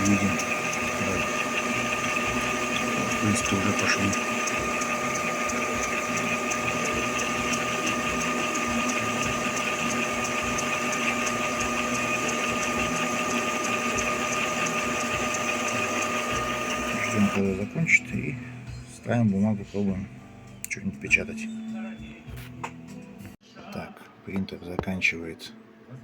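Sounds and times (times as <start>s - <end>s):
printer pump motor whine: 0.0s - 17.6s.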